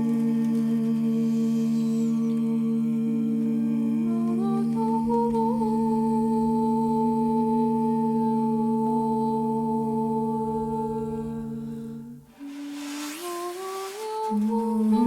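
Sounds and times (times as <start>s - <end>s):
hummed vocal tones: 0.0s - 15.0s
steady drone: 8.8s - 15.0s.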